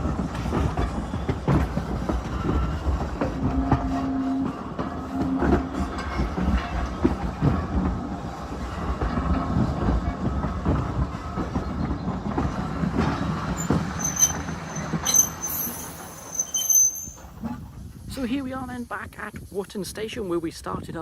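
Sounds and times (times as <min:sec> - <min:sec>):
train wheels clicking over rail joints: 0:00.0 - 0:18.0
low train rumble: 0:00.0 - 0:21.0
short high-pitched squeals: 0:14.0 - 0:17.4.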